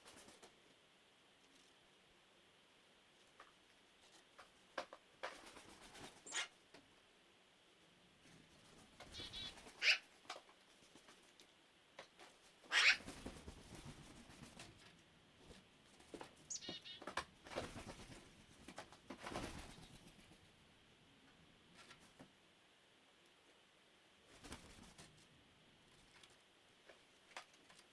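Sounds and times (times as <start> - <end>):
magpies calling: 6.2 - 6.6, 9.1 - 10.1, 12.7 - 13.1, 16.5 - 17.1.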